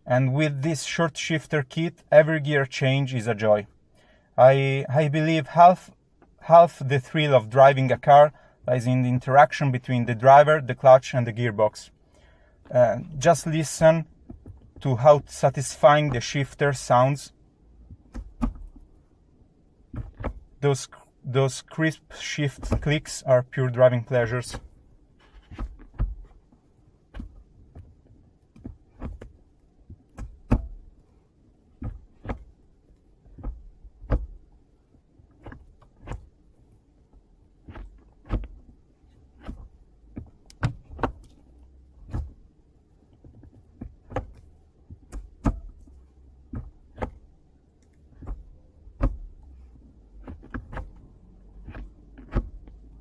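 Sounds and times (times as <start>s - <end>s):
faint low hum: 0.0s - 53.0s
gear lever shift clicks: 17.8s - 18.9s, 19.9s - 20.7s, 22.2s - 23.2s, 23.9s - 31.0s, 31.8s - 36.4s, 37.0s - 53.0s.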